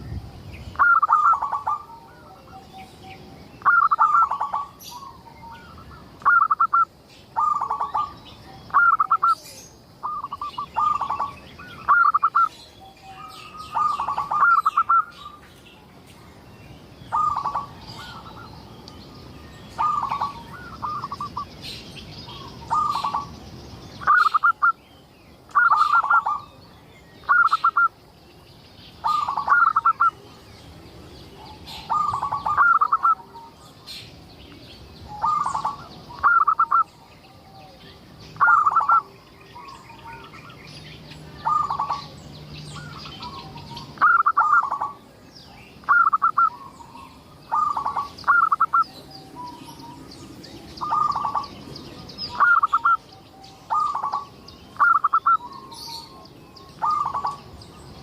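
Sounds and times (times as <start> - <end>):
faint high chirping: 0.0 - 58.0
dove cooing: 0.8 - 5.6, 6.2 - 12.5, 13.1 - 15.4, 17.1 - 18.5, 19.8 - 21.4, 24.0 - 24.7, 25.6 - 26.5, 29.0 - 30.4, 31.4 - 33.6, 35.1 - 37.8, 38.4 - 40.3, 41.4 - 42.1, 42.8 - 45.0, 45.8 - 50.0, 50.8 - 51.6, 52.3 - 53.0, 53.7 - 56.2, 56.8 - 57.5.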